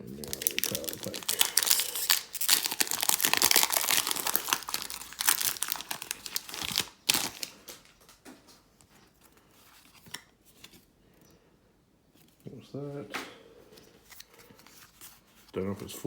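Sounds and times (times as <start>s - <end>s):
foil wrapper crinkling and tearing: 0.0s - 8.2s.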